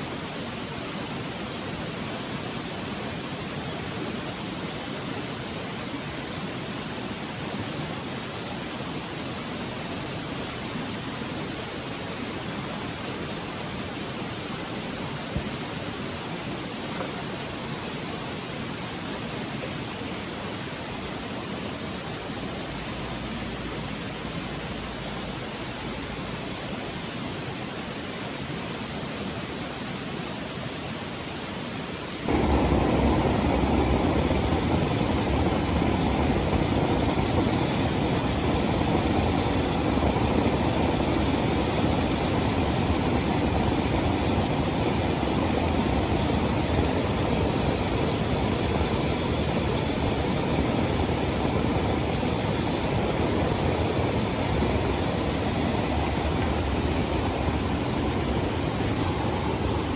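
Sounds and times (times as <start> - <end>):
pressure lantern hissing: 18.6 - 26.7, 32.1 - 59.9.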